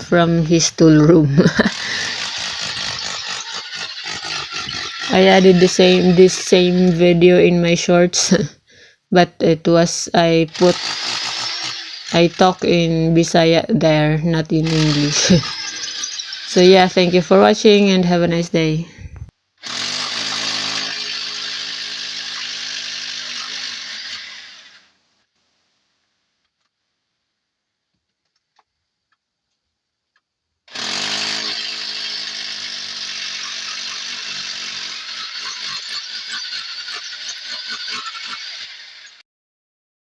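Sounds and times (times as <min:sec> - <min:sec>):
hammer drill drilling into stone: 0:01.4 - 0:07.1, 0:10.5 - 0:12.7, 0:14.6 - 0:17.9, 0:19.6 - 0:24.9, 0:30.7 - 0:39.2.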